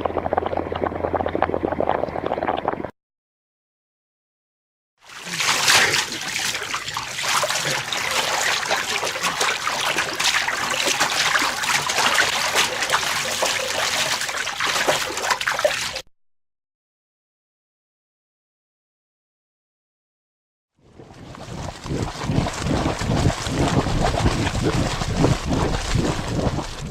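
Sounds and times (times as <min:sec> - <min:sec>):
hot spring water bubbling: 0:00.0 - 0:02.8, 0:05.0 - 0:16.0, 0:20.9 - 0:26.9.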